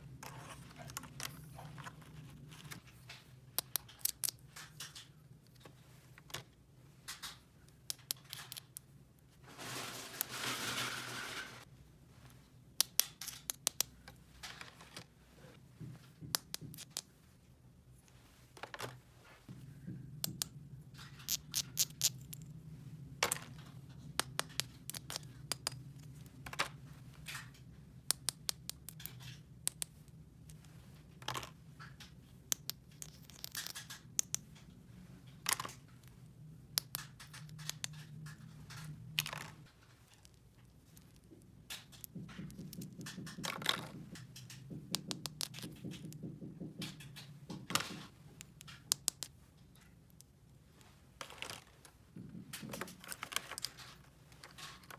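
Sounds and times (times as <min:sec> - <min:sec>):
plastic toy parts clicking: 0:03.6 - 0:06.5, 0:07.1 - 0:08.9, 0:12.8 - 0:14.7, 0:20.2 - 0:22.4, 0:24.2 - 0:25.8, 0:31.2 - 0:34.6, 0:36.8 - 0:46.1, 0:46.8 - 0:50.3
packaging scraping and tearing: 0:09.5 - 0:11.7.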